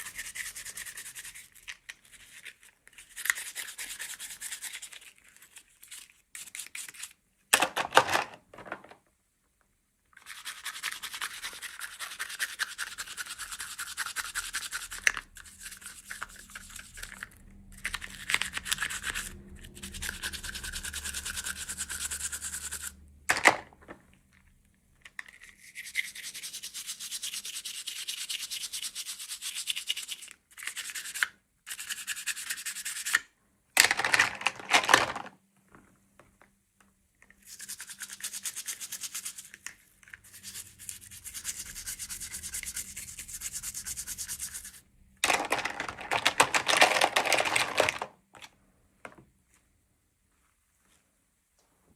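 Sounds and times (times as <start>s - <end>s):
packaging rubbing and scraping: 44.5s - 48.1s.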